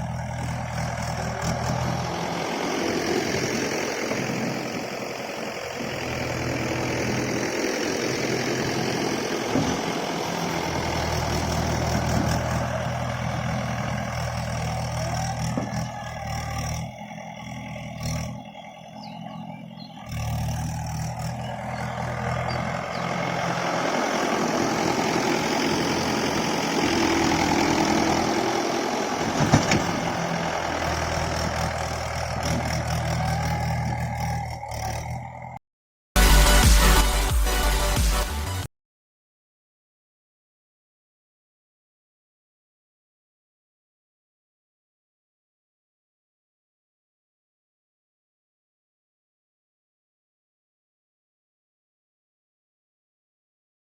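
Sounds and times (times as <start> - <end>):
tractor diesel engine running: 0.0 - 35.6.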